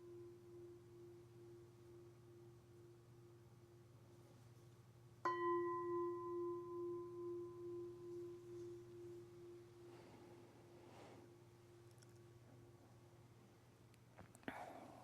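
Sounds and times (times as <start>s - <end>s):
meditation bell ringing: 0.0s - 3.5s, 5.3s - 11.9s.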